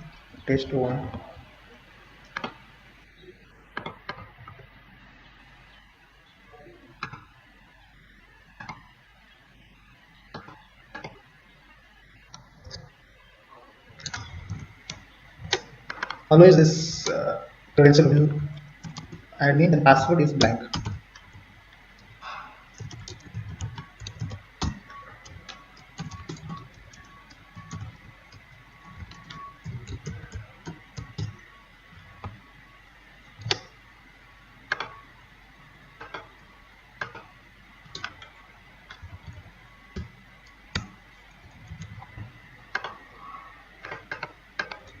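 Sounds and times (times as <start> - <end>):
keyboard typing: 8.5 - 8.9, 10.3 - 11.2, 14.0 - 17.4, 18.0 - 19.4, 20.0 - 22.1, 22.7 - 32.5, 33.2 - 33.8, 34.7 - 35.1, 36.0 - 45.0.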